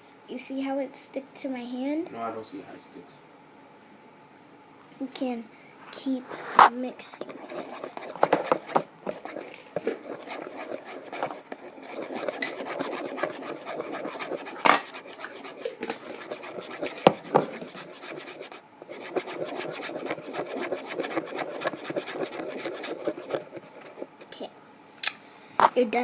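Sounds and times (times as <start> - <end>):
utensil scraping sticky slime: 6.3 - 24.2.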